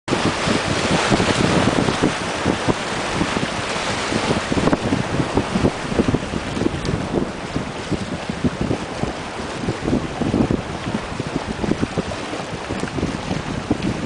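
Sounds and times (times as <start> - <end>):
sea waves rushing: 0.1 - 14.0
wind buffeting microphone: 0.1 - 14.0.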